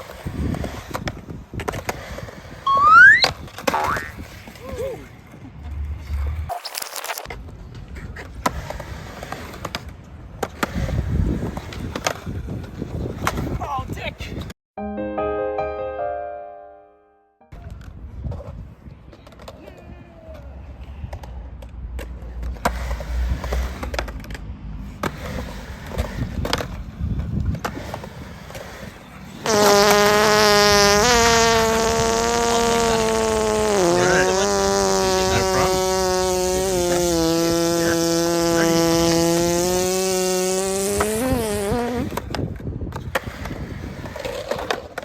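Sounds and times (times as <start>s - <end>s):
skateboard clacks: 0.0s - 2.6s, 7.3s - 13.6s, 17.6s - 30.1s, 42.0s - 45.0s
skateboard wheels rolling: 0.0s - 14.5s, 17.6s - 45.0s.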